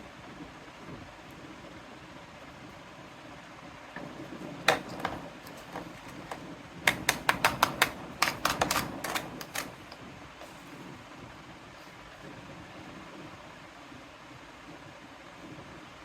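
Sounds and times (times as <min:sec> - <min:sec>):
plastic toy pieces clicking: 0:04.7 - 0:09.9.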